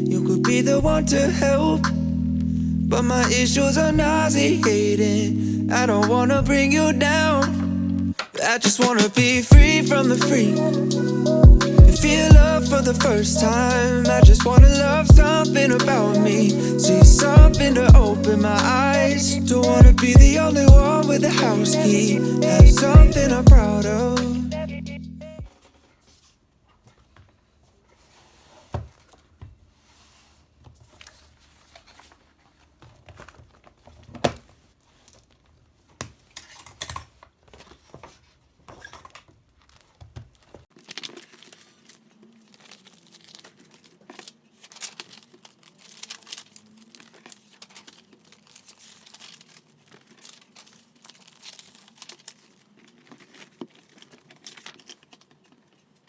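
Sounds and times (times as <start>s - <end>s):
crinkling and tearing: 25.5s - 56.0s.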